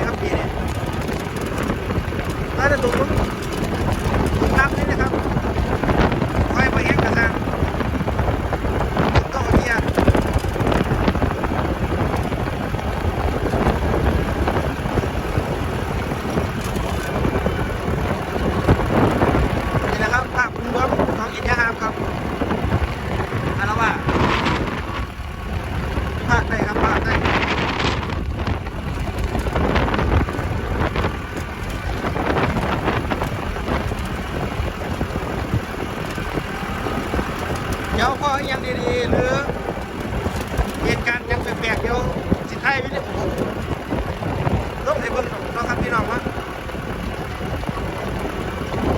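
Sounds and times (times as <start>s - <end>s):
strong wind on microphone: 0.0s - 48.9s.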